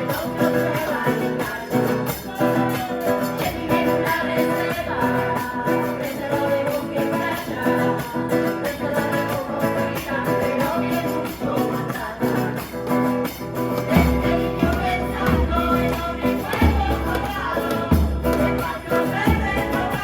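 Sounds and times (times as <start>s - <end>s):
guitar: 0.0s - 20.0s
person singing: 0.0s - 20.0s
steady percussion beat: 0.0s - 20.0s.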